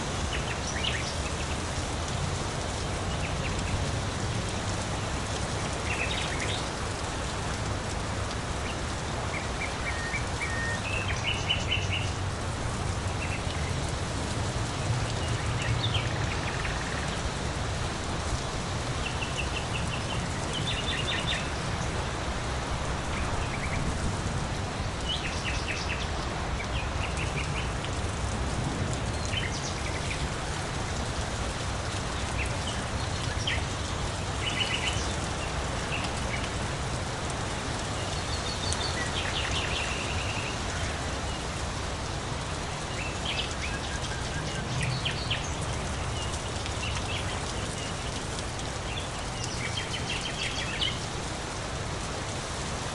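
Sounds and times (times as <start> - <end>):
steady rain falling: 0.0 - 52.9
small birds chirping: 19.0 - 22.0, 32.0 - 36.6, 37.5 - 41.6, 42.4 - 51.1.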